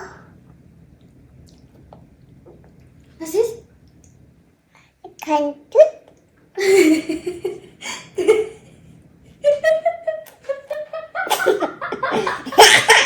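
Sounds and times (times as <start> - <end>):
child giggling: 6.6 - 8.6, 9.4 - 13.0.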